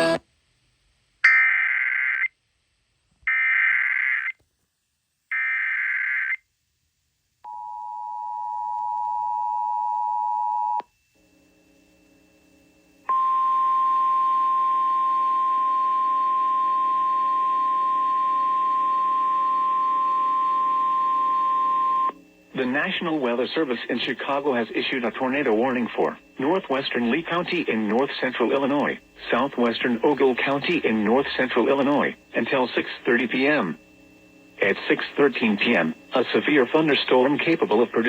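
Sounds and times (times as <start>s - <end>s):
steady warning alarm tone: 7.5s - 38.0s
low buzz: 10.8s - 38.0s
screechy digital header bursts: 22.5s - 38.0s.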